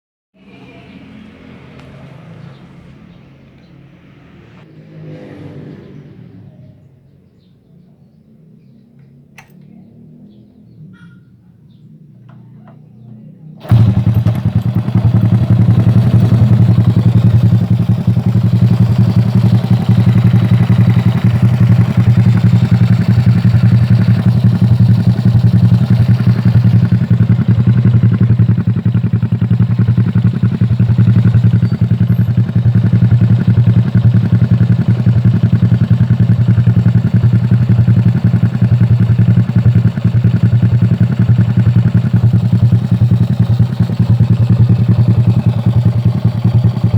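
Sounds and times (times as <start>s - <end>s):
motorcycle engine idling loudly: 13.6s - 46.9s.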